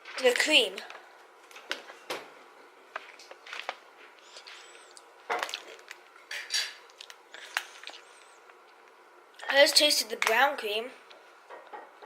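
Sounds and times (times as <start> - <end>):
cookie crunching while eating: 3.0 - 6.2.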